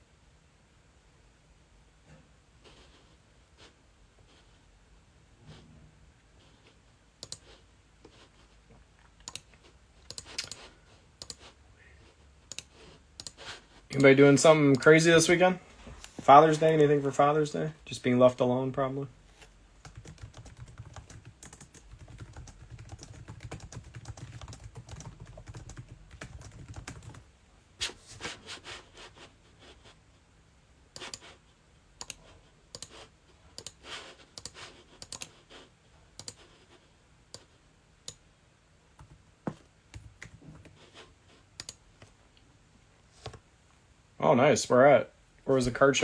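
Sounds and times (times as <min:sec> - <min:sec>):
typing on a keyboard: 0:07.2 - 0:07.6, 0:09.2 - 0:11.5, 0:19.8 - 0:27.3, 0:34.4 - 0:35.4, 0:36.2 - 0:36.5, 0:39.9 - 0:40.8.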